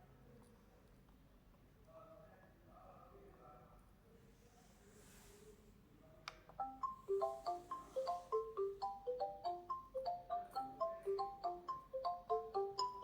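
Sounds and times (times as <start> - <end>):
alarm clock chime melody: 6.6 - 13.0.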